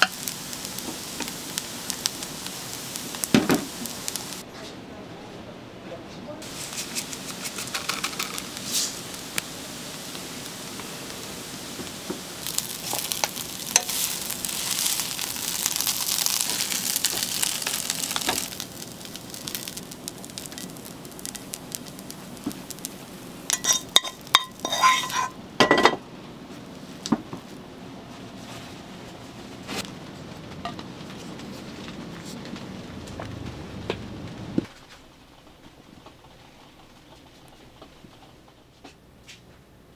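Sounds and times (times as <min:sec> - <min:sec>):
rice sizzling in a pan: 0:00.0 - 0:04.4, 0:06.4 - 0:27.6
metal spatula scraping a pan: 0:23.5 - 0:25.4
spatula clanking on pan: 0:23.5 - 0:26.0.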